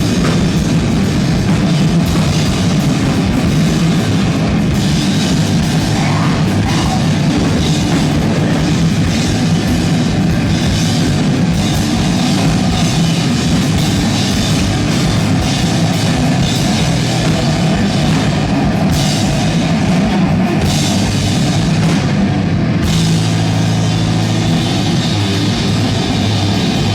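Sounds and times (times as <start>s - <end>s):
pounding drum kit and cymbals: 0.0s - 26.9s
sustained low amplified tones: 0.0s - 26.9s.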